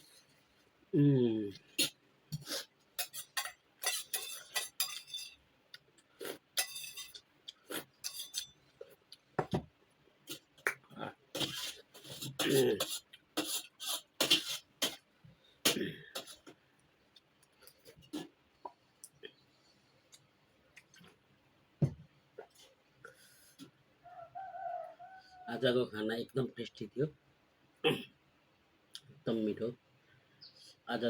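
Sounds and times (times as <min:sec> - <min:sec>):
plate and utensils clinking: 0:03.0 - 0:05.4, 0:06.6 - 0:07.2.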